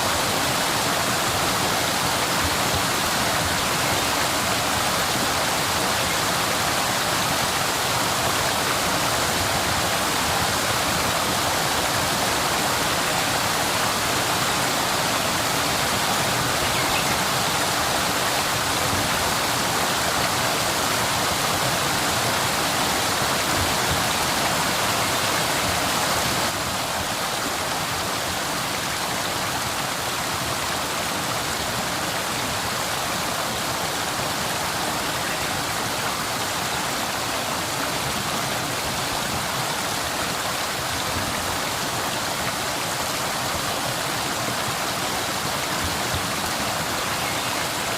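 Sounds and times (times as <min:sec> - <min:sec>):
waterfall rushing: 0:00.0 - 0:47.9.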